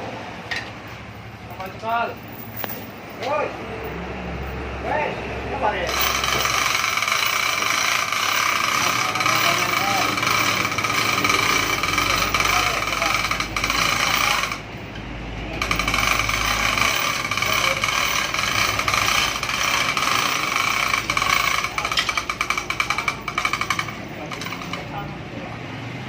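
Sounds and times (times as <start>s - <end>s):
power tool high-pitched whine: 5.9s - 14.6s, 15.6s - 24.0s
rapid hammering: 5.9s - 14.7s, 15.6s - 25.0s.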